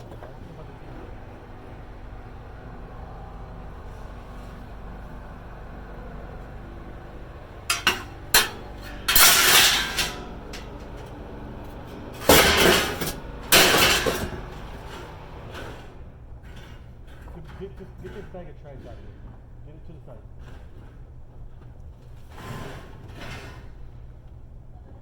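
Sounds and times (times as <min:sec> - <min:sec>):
low steady hum: 0:00.0 - 0:22.2
scrap metal clanking onto pile: 0:07.6 - 0:15.9.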